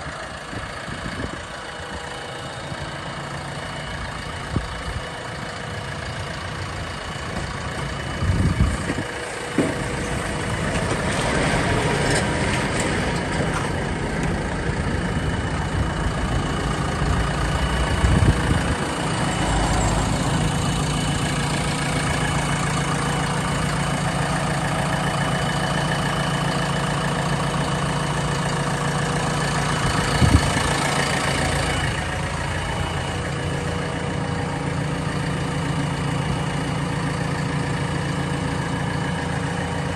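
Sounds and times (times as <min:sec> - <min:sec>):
diesel engine running: 0:00.0 - 0:39.9
short clunks: 0:07.3 - 0:11.2.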